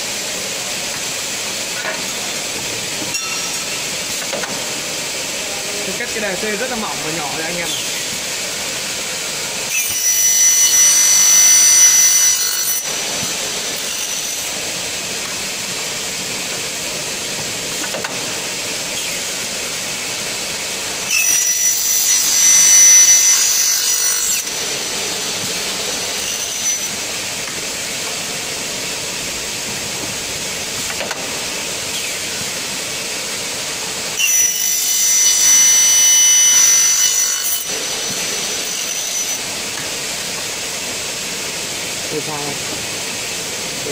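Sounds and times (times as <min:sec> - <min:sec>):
saw blade whining through metal: 0:03.1 - 0:04.5, 0:09.7 - 0:15.3, 0:21.0 - 0:27.6, 0:34.2 - 0:39.8
cutting machine running: 0:20.8 - 0:31.9.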